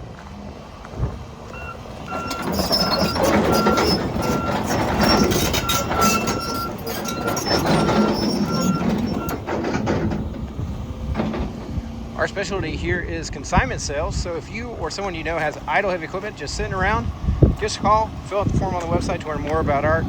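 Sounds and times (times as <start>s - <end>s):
diesel engine and running gear: 0.0s - 20.0s
excavator travel alarm beeping: 1.5s - 9.9s.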